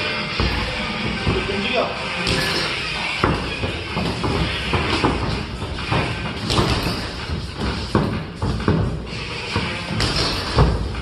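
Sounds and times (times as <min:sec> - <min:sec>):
steady background noise: 0:00.0 - 0:11.0
boxing gloves thudding punches: 0:02.2 - 0:11.0.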